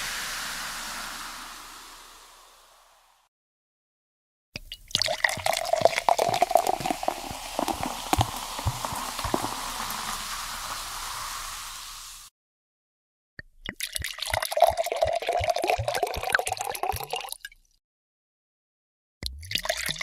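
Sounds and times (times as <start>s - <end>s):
drink pouring into a glass: 4.8s - 12.2s, 13.8s - 17.4s.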